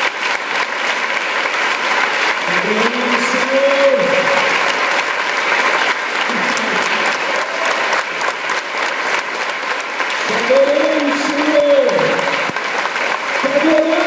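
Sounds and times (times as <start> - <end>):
congregation applauding: 0.0 - 14.0
person calling out: 2.5 - 4.5.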